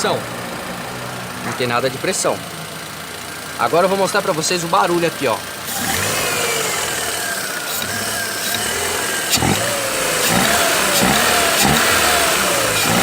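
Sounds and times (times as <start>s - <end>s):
car engine knocking: 0.0s - 13.0s.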